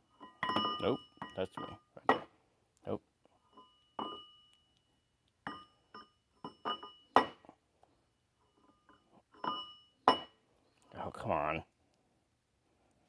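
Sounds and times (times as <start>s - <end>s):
metal-on-metal knocks and clinks: 0.1s - 2.3s, 3.4s - 4.5s, 5.4s - 7.6s, 8.5s - 10.4s.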